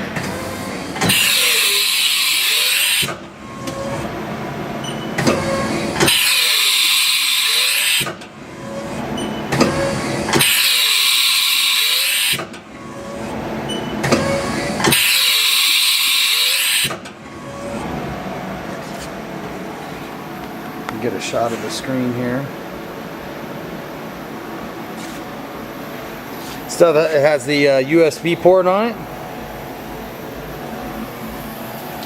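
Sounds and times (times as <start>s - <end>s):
whirring tool changer motor: 0.0s - 4.2s, 4.8s - 22.4s.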